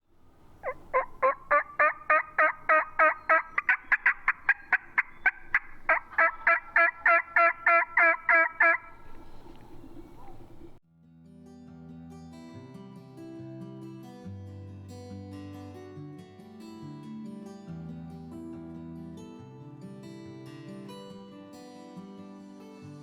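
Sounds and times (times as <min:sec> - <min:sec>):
turkey yelping: 0:00.4 - 0:10.8.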